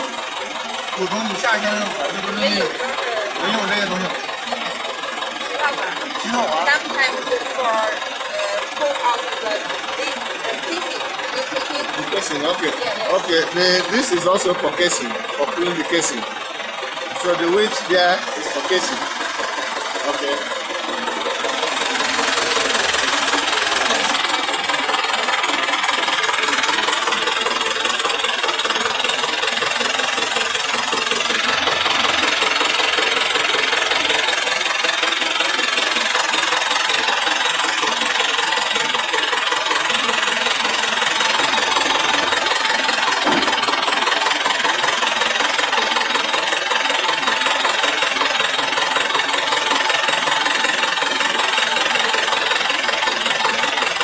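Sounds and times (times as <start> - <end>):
drilling rig engine running: 0.0 - 54.0.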